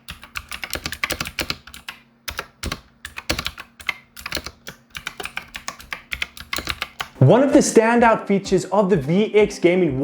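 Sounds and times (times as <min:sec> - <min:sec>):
mechanical keyboard key clicks: 0:00.0 - 0:07.2.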